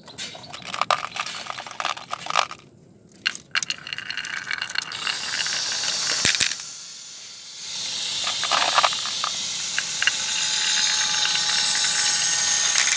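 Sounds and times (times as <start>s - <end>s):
marbles clicking on wooden track: 0.4s - 2.6s, 3.2s - 6.6s, 8.2s - 12.9s
marbles rolling down wooden run: 0.4s - 2.6s, 3.2s - 6.6s, 8.2s - 12.9s.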